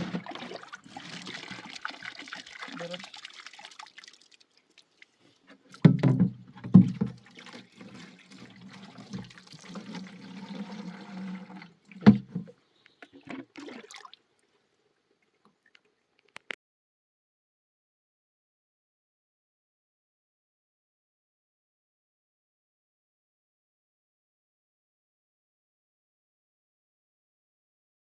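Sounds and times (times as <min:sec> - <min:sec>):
water sloshing: 0:00.0 - 0:14.6.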